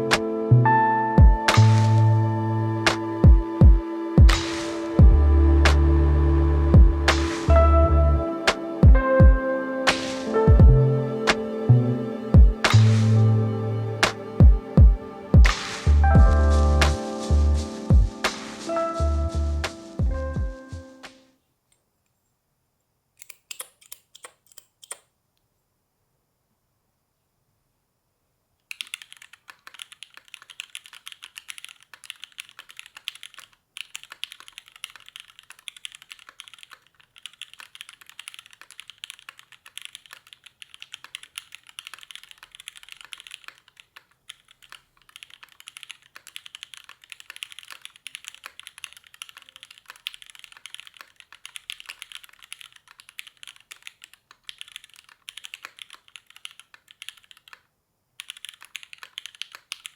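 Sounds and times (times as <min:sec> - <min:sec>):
fast typing on mechanical keyboard: 0:28.7 - 0:59.9.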